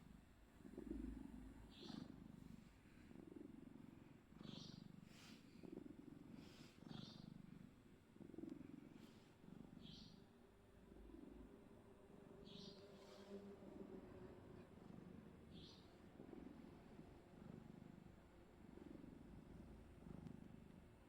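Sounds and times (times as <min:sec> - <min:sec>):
cat purring: 0:00.0 - 0:21.0
breathy hiss: 0:05.0 - 0:05.7, 0:06.3 - 0:06.8.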